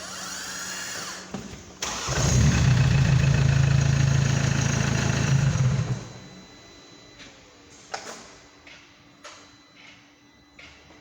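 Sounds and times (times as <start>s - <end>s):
engine turning over with hum: 1.8s - 6.3s.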